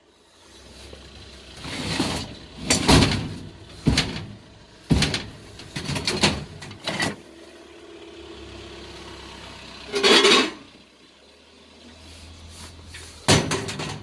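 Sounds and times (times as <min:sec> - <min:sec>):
loud clunks and bangs: 0:01.8 - 0:07.2, 0:13.2 - 0:14.0.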